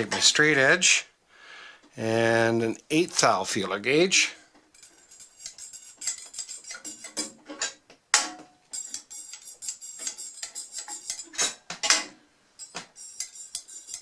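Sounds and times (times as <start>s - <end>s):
metal tools clicking on cast iron: 4.7s - 7.8s, 8.7s - 12.0s, 12.6s - 14.0s.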